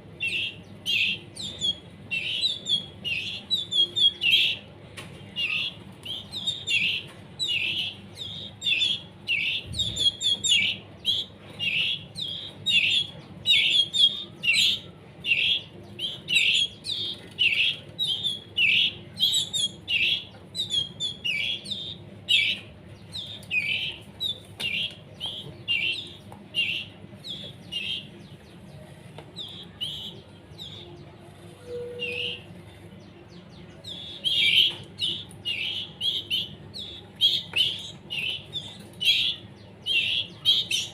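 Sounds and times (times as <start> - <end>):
canary chicks chirping: 0.0 - 40.9.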